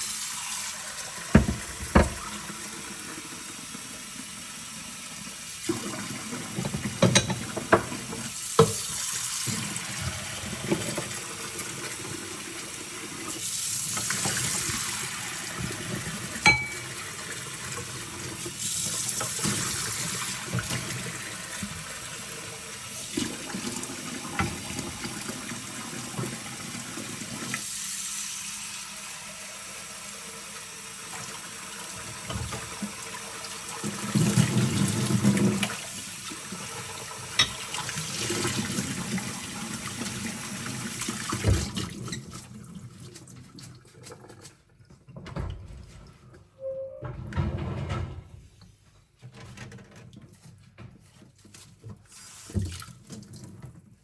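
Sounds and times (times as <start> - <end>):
tap running into a sink: 1.3 - 2.5, 5.7 - 11.2, 24.2 - 25.3, 32.0 - 33.0, 51.9 - 53.8
dishes clinking together: 6.6 - 8.0, 16.4 - 17.0, 37.4 - 37.7.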